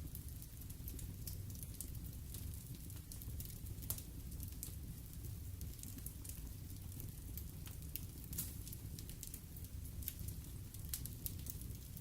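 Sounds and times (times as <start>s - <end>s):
fire crackling: 0.0s - 12.0s
sharp pops of fire: 8.3s - 9.0s.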